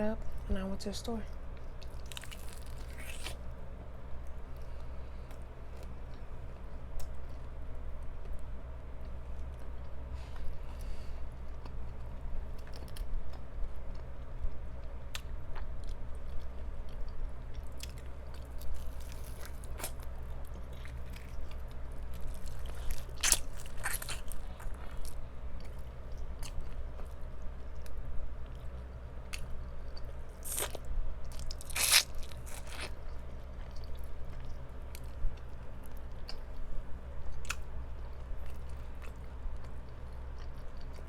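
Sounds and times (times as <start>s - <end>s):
crunchy chewing of fried chicken: 1.3s - 41.0s.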